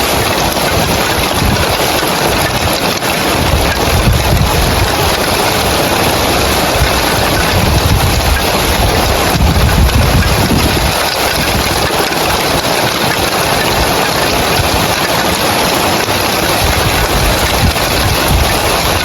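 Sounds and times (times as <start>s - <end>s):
heavy rain on roof tiles: 0.0s - 19.0s.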